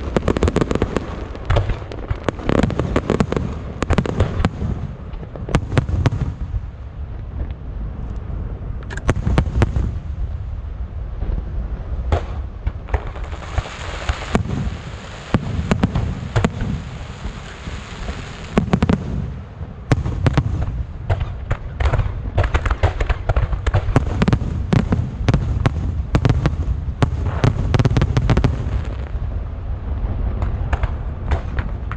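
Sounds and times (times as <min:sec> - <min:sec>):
fireworks cracks and bangs: 0:00.0 - 0:07.6, 0:08.9 - 0:31.9
hissing crackle: 0:12.3 - 0:31.9.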